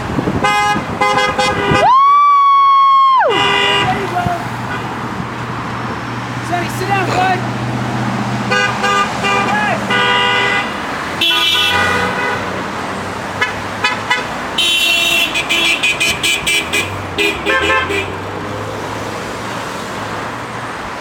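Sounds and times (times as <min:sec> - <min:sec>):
car horns honking: 0:00.0 - 0:01.9, 0:03.2 - 0:05.4, 0:06.4 - 0:07.7, 0:08.4 - 0:18.4
road traffic: 0:00.0 - 0:21.0.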